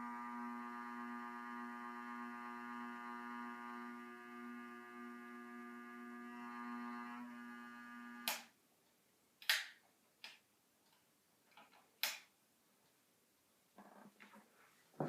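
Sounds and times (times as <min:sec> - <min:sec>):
sharp clicks: 0:09.4 - 0:12.3.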